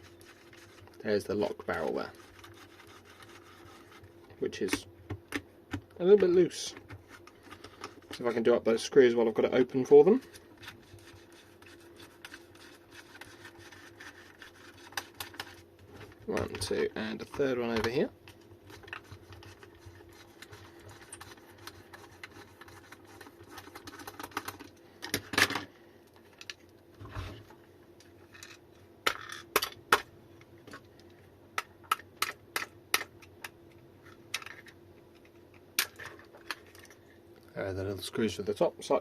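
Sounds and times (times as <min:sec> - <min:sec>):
faint steady hum: 0:00.0 - 0:39.0
small parts clicking and tapping: 0:28.0 - 0:37.0.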